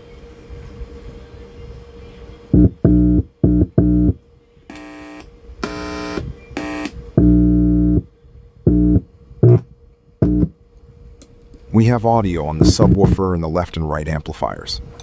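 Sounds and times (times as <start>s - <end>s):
short synthesized test tones: 2.6s - 8.0s.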